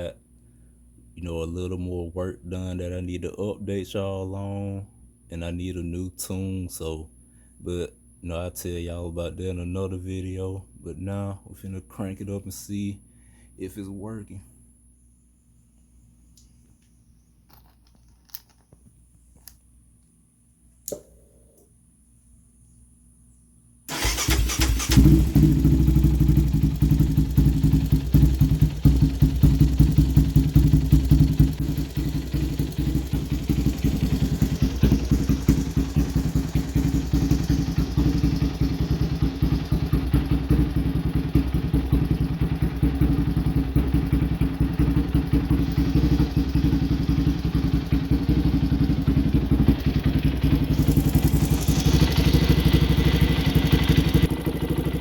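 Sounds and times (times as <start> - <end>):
engine starting and idling: 23.9 - 40.5, 49.4 - 55.0.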